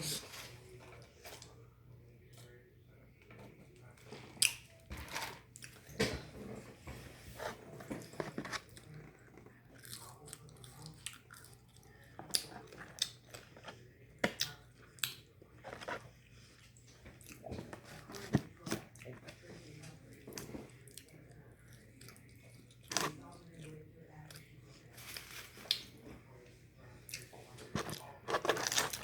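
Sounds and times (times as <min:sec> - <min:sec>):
faint low hum: 0:00.0 - 0:29.0
person chewing crunchy food: 0:07.8 - 0:19.2, 0:27.1 - 0:29.0.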